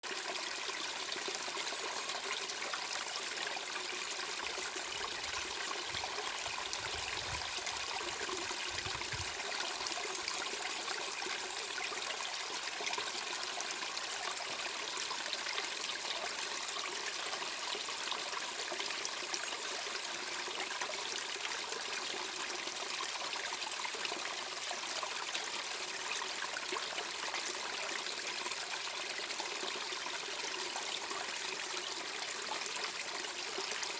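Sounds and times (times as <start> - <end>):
running water: 2.8 - 15.6.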